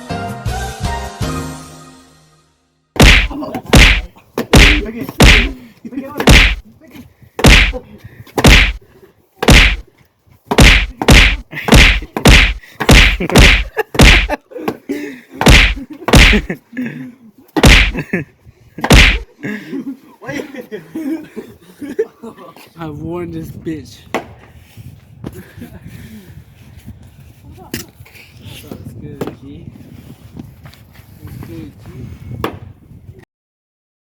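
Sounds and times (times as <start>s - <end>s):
loud sharp smacks: 3.0s - 5.5s, 6.2s - 6.6s, 7.4s - 7.8s, 8.4s - 8.8s, 9.4s - 9.9s, 10.5s - 14.3s, 15.4s - 16.5s, 17.6s - 18.0s, 18.8s - 19.3s.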